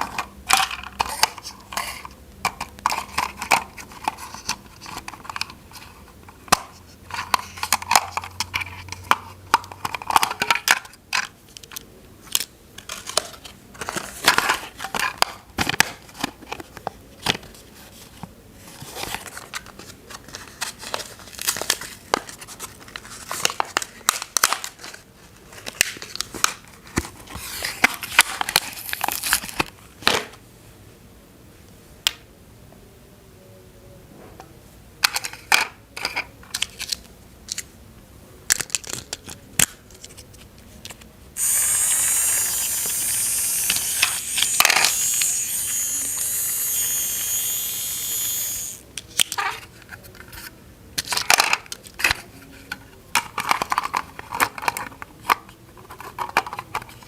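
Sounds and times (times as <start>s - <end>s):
plastic toy parts clicking: 38.5s - 39.8s, 41.4s - 49.5s
small electric motor whirring: 41.4s - 48.8s.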